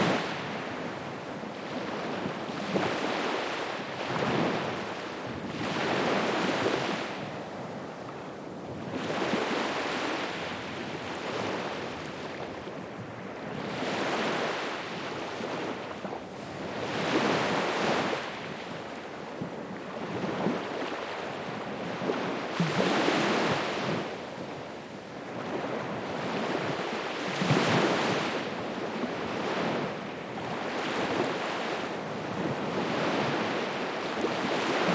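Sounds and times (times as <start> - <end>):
waves breaking on shore: 0.0 - 34.9
wind on microphone: 0.0 - 34.9.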